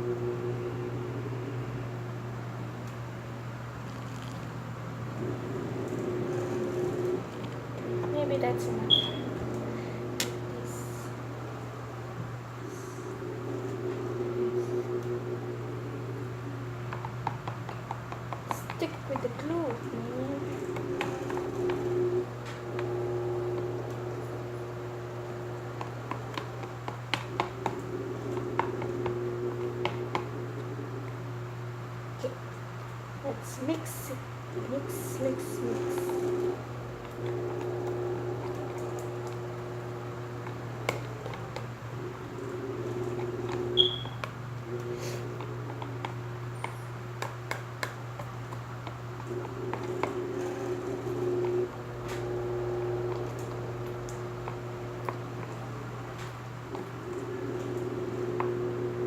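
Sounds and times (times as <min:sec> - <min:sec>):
steady low hum: 0:00.0 - 0:59.0
utensil clicking and squishing slime: 0:16.9 - 0:21.8, 0:45.3 - 0:51.6.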